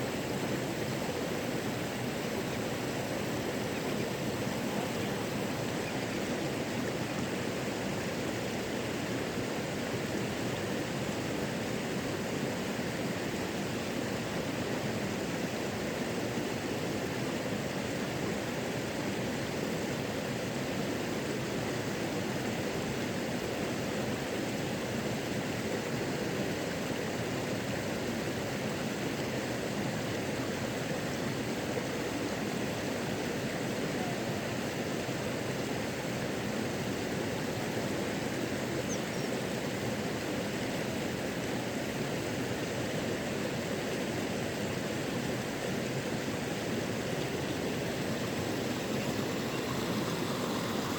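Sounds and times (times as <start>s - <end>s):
waterfall rushing: 46.4s - 50.9s.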